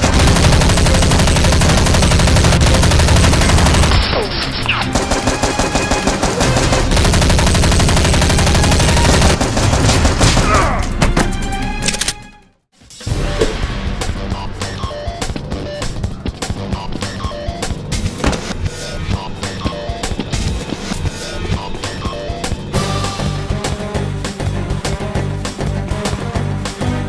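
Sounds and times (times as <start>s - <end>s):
machine-gun fire: 0.0s - 4.1s, 4.8s - 10.8s
background music: 0.0s - 27.0s.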